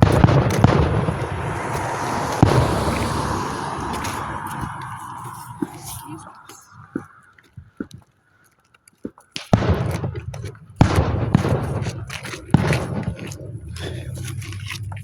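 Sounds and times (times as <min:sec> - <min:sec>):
fireworks loud bangs: 0:00.0 - 0:04.8, 0:09.5 - 0:13.2
rumbling crackling tail: 0:00.0 - 0:06.8, 0:10.8 - 0:15.0.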